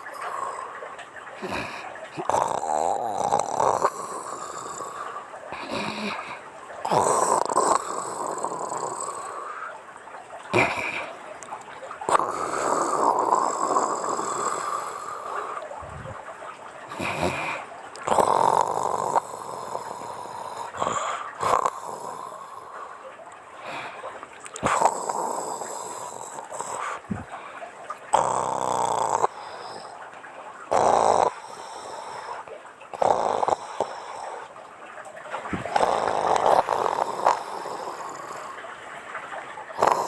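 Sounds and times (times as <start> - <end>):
woman snoring: 1.4 - 5.0, 5.6 - 9.4, 12.1 - 15.0, 17.0 - 22.4, 28.2 - 29.8, 33.0 - 33.9, 35.7 - 38.4, 39.8 - 40.0.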